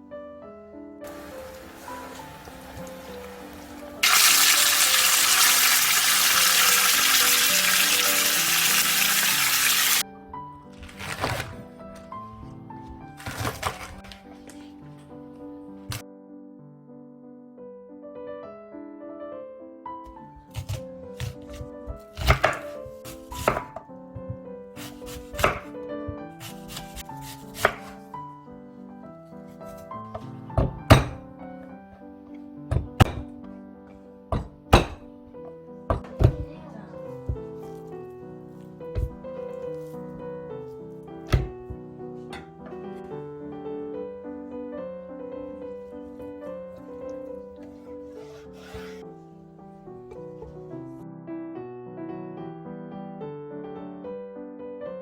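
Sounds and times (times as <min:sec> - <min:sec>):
light piano music: 0:00.0 - 0:55.0
running water rushing: 0:01.1 - 0:10.0
knife chopping on cutting board: 0:13.2 - 0:14.0, 0:20.4 - 0:23.8, 0:24.8 - 0:25.7, 0:26.4 - 0:28.0, 0:38.9 - 0:40.0, 0:41.3 - 0:42.4, 0:46.3 - 0:49.0.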